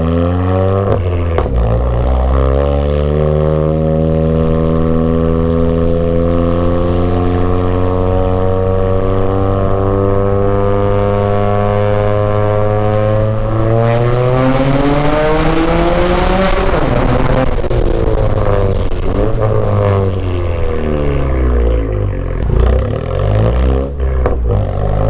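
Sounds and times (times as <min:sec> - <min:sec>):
car engine accelerating: 0:00.0 - 0:25.0.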